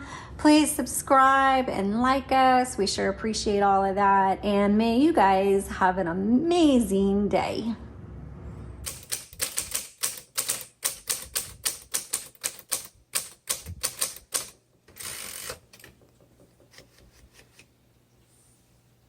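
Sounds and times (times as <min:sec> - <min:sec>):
typewriter keystrokes: 0:08.9 - 0:17.0
typewriter rasp: 0:08.9 - 0:17.6.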